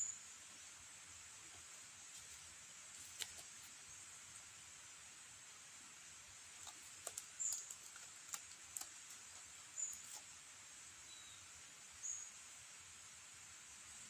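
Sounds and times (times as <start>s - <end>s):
small bird chirping: 0.0s - 0.8s, 6.6s - 10.4s, 11.0s - 12.4s
faint sharp clicks and crackles: 6.6s - 10.3s.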